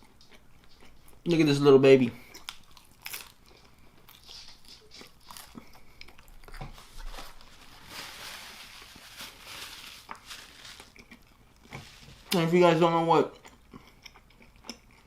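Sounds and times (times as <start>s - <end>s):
chewing and biting pizza: 2.2s - 7.0s, 10.9s - 11.8s, 12.9s - 15.0s
crunching rustle: 6.5s - 12.7s.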